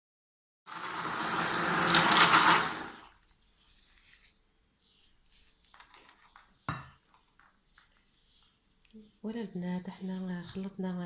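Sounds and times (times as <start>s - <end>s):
immersion blender running: 0.7s - 3.1s.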